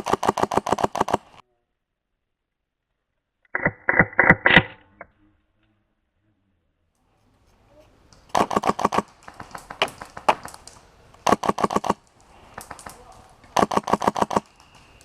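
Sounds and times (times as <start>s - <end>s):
airsoft gun bursts: 0.0s - 1.4s, 8.3s - 10.5s, 11.2s - 15.0s.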